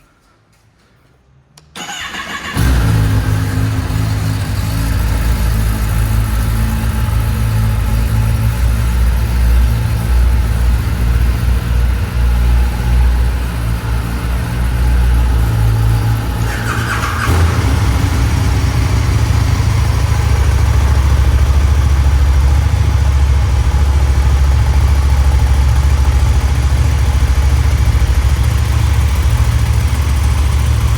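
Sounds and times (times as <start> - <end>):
starter whine: 1.8 - 30.9
motorcycle engine idling: 2.6 - 30.9.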